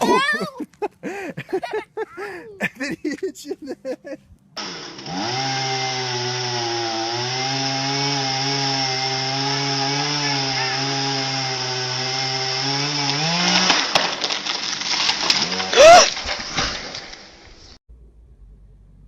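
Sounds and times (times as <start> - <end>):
small engine running: 4.6 - 12.8.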